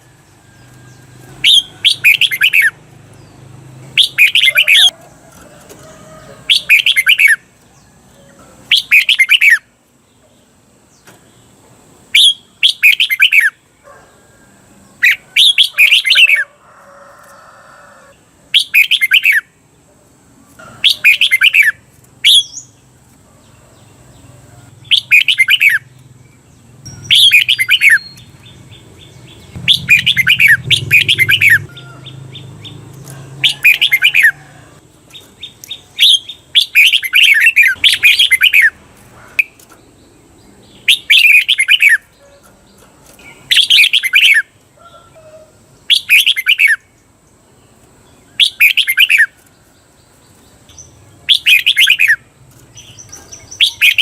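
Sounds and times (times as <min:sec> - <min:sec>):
bulbul whistled song: 0:08.7 - 0:09.7, 0:12.1 - 0:13.6, 0:18.6 - 0:19.5, 0:20.9 - 0:22.7, 0:24.9 - 0:25.9, 0:26.9 - 0:28.3, 0:29.6 - 0:31.8, 0:48.4 - 0:49.4, 0:51.3 - 0:52.2.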